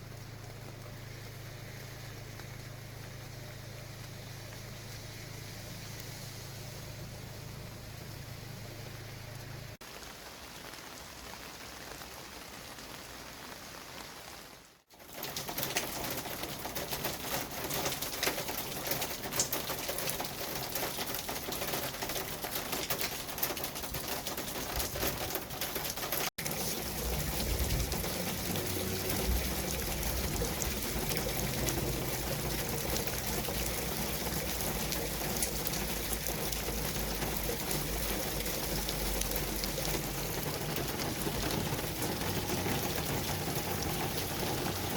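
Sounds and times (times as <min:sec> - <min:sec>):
deep traffic rumble: 0:00.0 - 0:09.8, 0:23.6 - 0:44.9
tyres hissing on wet road: 0:00.0 - 0:14.9, 0:26.0 - 0:44.9.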